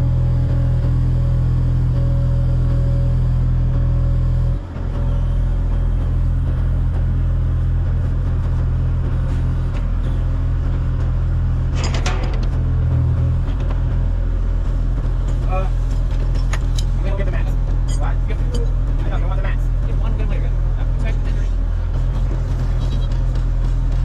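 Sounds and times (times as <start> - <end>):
engine running: 0.0 - 24.0
rattling clicks: 16.3 - 17.0.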